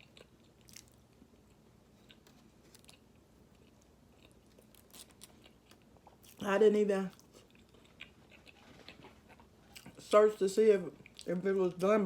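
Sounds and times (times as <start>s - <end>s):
faint chewing: 0.0s - 6.4s, 7.1s - 10.2s.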